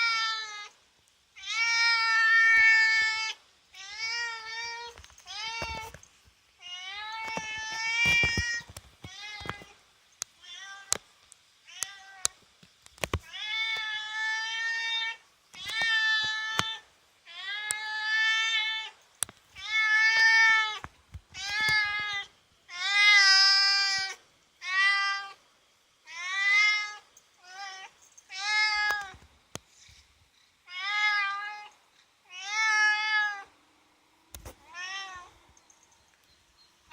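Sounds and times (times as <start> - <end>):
cat meowing: 32.3 - 33.5, 34.6 - 35.3.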